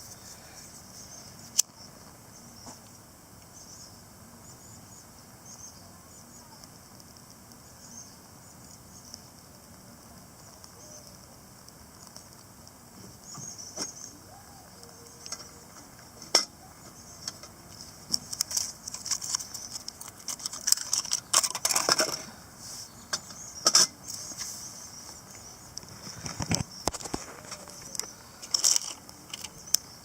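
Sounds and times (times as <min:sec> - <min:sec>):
insects chirping: 0:00.0 - 0:30.0
small objects clicking and clattering: 0:16.2 - 0:22.3, 0:25.4 - 0:29.9.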